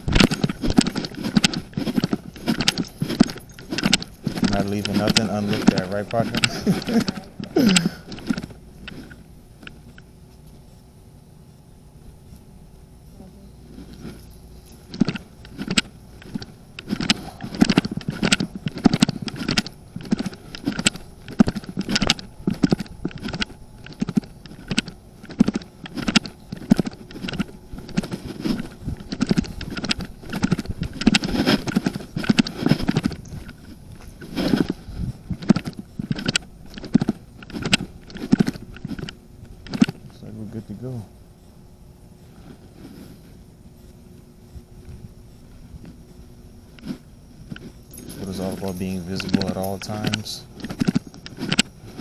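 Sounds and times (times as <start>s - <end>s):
footsteps walking: 0.0s - 10.9s, 13.6s - 40.1s, 42.2s - 52.0s.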